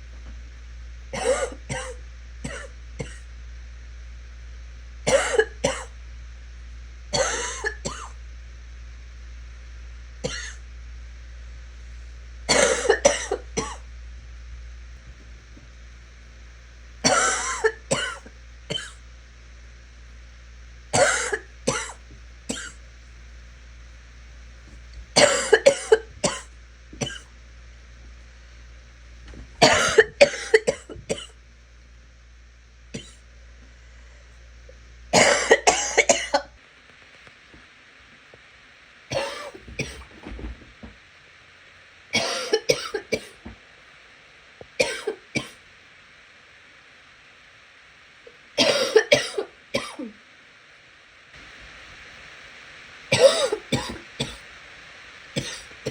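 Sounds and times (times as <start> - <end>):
person coughing: 1.2 - 3.2, 5.1 - 5.9, 7.2 - 8.2, 10.3 - 10.6, 12.5 - 13.8, 17.1 - 19.0, 21.0 - 22.8, 25.2 - 27.3, 29.6 - 31.3, 33.0 - 33.2, 35.2 - 36.5, 39.1 - 40.1, 42.2 - 43.4, 44.8 - 45.6, 48.6 - 50.2, 53.1 - 54.4, 55.4 - 55.9.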